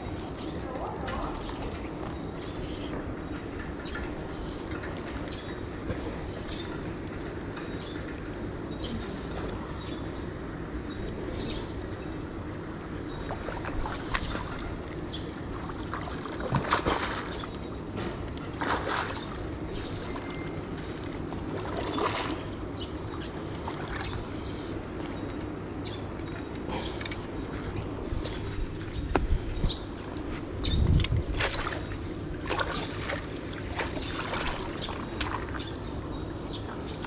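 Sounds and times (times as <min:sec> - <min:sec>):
water sloshing: 0:12.9 - 0:25.4, 0:29.9 - 0:35.9.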